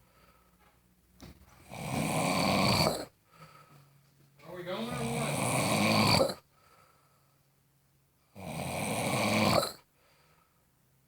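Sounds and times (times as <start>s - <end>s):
person snoring: 1.7s - 3.1s, 4.8s - 6.4s, 8.4s - 9.8s.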